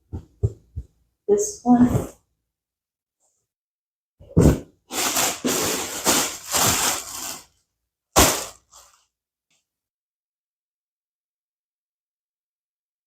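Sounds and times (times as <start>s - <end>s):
plastic packaging crinkling: 4.9s - 7.6s, 8.2s - 9.0s.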